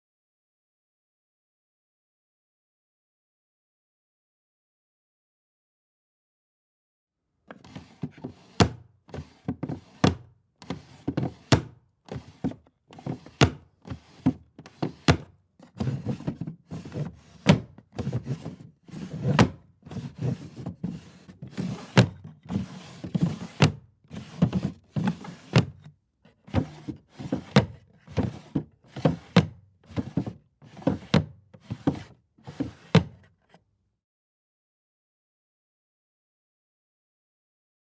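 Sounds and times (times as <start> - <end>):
wooden drawers opening and shutting: 7.5 - 25.8, 26.4 - 33.3.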